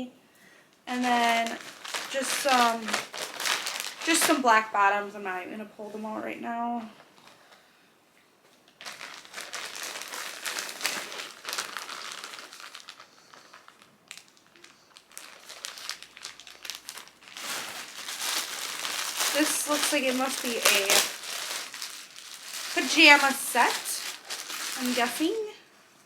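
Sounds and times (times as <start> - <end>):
packaging crinkling: 0.9 - 4.7, 8.7 - 25.6.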